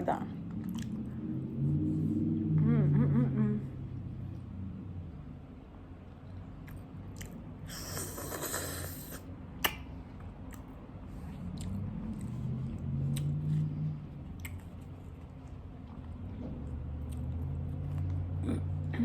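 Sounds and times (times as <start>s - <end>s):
low hum: 0.0s - 8.5s, 9.2s - 19.0s
wet chewing: 0.5s - 1.1s, 6.6s - 18.4s.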